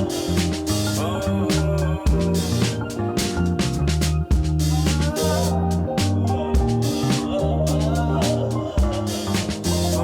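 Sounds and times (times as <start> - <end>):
funk soul music with drum beat: 0.0 - 10.0.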